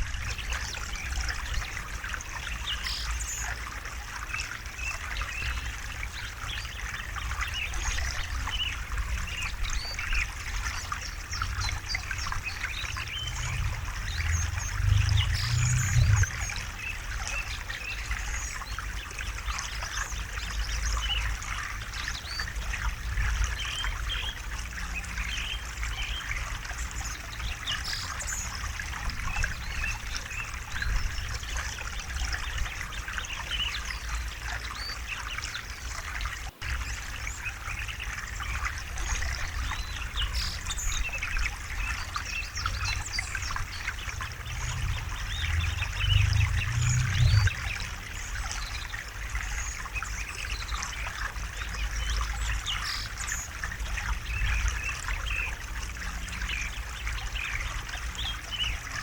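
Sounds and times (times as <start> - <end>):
river water flowing over stones: 0.0 - 59.0
low rumble: 11.4 - 17.2, 42.0 - 48.8.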